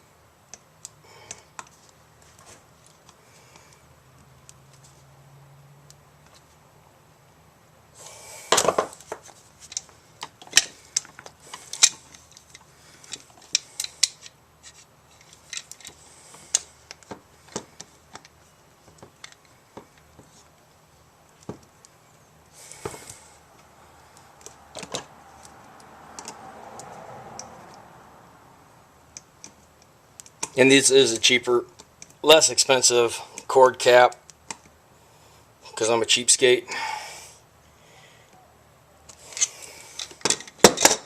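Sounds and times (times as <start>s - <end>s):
hand tools clicking and tapping: 24.4s - 27.8s.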